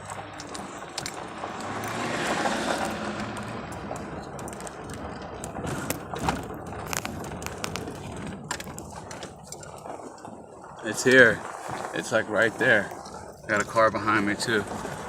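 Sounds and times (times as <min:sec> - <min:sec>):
clicks and rattles: 0:00.0 - 0:11.9
road and engine rumble in cab: 0:00.0 - 0:15.0.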